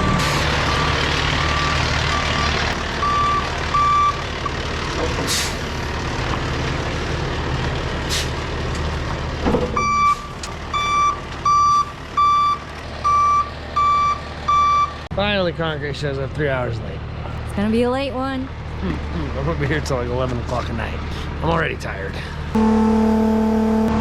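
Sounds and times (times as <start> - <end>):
reversing alarm beeping: 0.0 - 4.6, 9.8 - 15.0, 22.6 - 24.0
diesel truck engine running: 0.0 - 24.0
air brake hisses: 5.3 - 5.6, 8.1 - 8.3.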